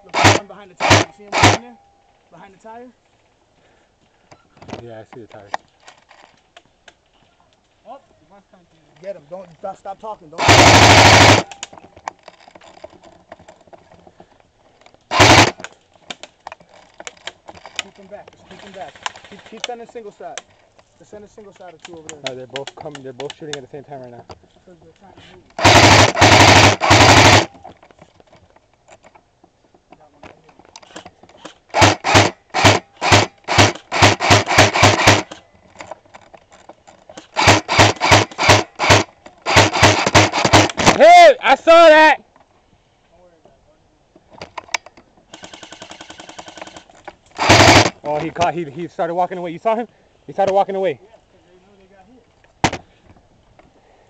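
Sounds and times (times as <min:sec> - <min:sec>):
airsoft rifle burst of pops: 0:15.1 - 0:16.3, 0:30.8 - 0:35.4, 0:37.2 - 0:41.0, 0:45.3 - 0:48.0.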